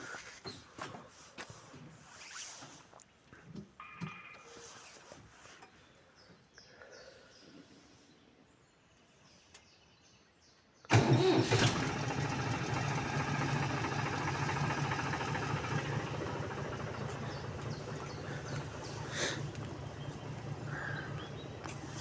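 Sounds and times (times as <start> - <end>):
engine starting and idling: 10.9 - 22.0.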